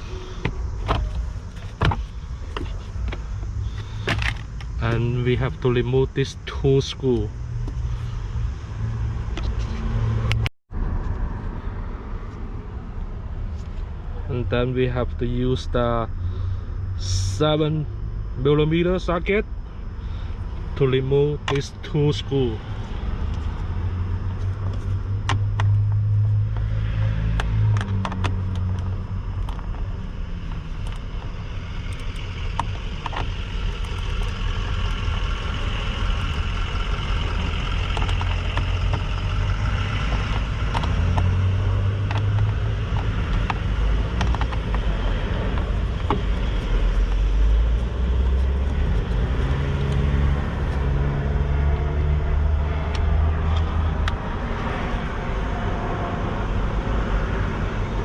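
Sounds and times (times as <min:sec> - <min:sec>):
low rumble with hum: 0:00.0 - 0:58.0
socket ratchet clicking: 0:31.9 - 0:35.2.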